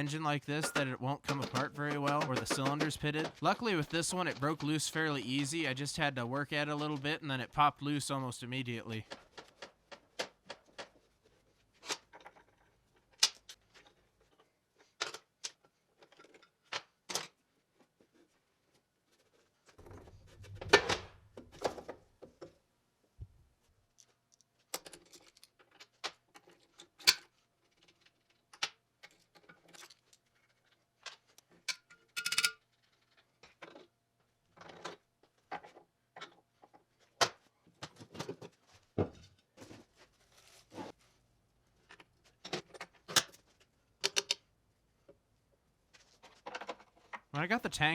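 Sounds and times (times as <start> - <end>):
hand tools clinking on metal: 0.0 - 5.0.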